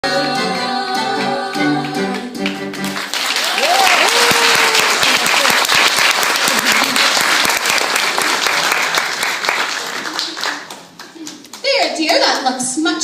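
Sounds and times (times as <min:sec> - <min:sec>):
musical theatre song: 0:00.0 - 0:11.5
audience applause: 0:02.4 - 0:11.6
audience cries: 0:03.3 - 0:05.6.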